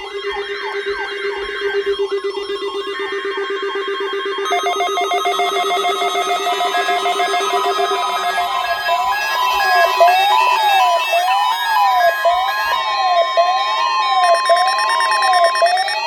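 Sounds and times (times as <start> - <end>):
pulsing electronic tones: 4.5 - 12.8, 14.2 - 16.0
fast warbling alarm tone: 4.5 - 16.0.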